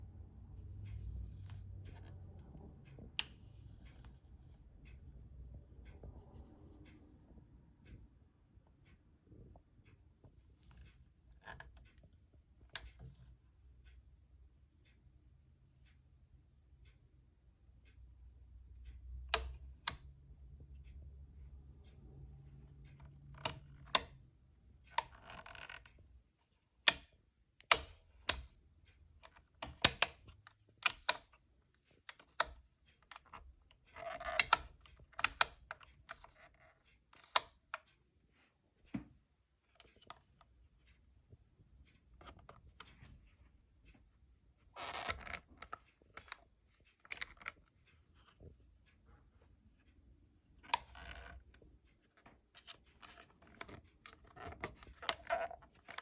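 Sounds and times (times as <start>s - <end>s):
sharp metallic clicks and knocks: 26.8s - 38.0s.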